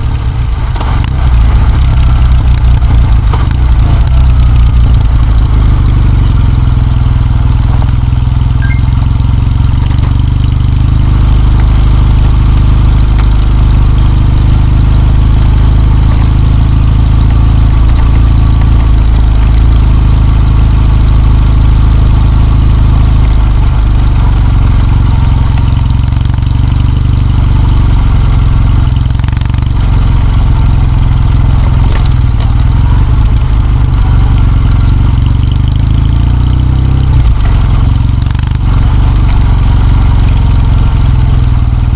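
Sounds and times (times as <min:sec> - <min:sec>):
motorcycle engine running: 0:00.0 - 0:41.9.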